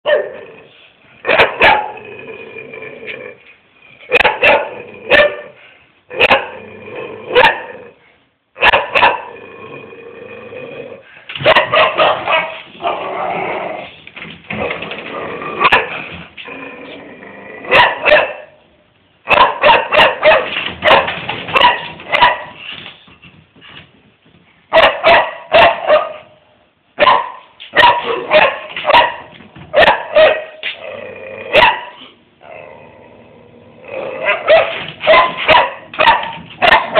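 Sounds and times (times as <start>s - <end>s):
dog barking: 0.0s - 0.4s, 1.2s - 2.0s, 4.1s - 6.6s, 7.3s - 7.8s, 8.6s - 9.3s, 11.4s - 13.0s, 15.6s - 16.0s, 17.7s - 18.6s, 19.3s - 22.6s, 24.7s - 26.4s, 27.0s - 30.6s, 31.5s - 32.0s, 34.2s - 36.9s.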